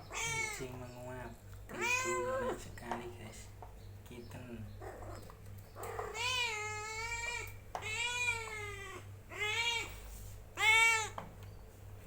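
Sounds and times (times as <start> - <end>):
kitten meowing: 0.0 - 0.7, 1.7 - 2.6, 5.8 - 9.9, 10.6 - 11.2.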